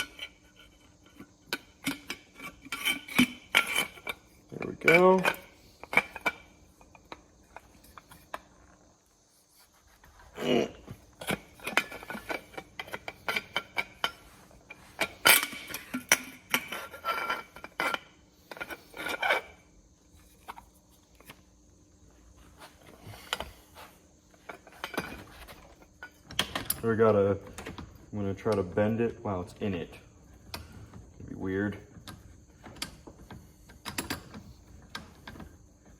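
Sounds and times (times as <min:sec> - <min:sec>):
metal pipe clinking and scraping: 0:00.0 - 0:08.7, 0:11.0 - 0:21.3, 0:23.1 - 0:27.2.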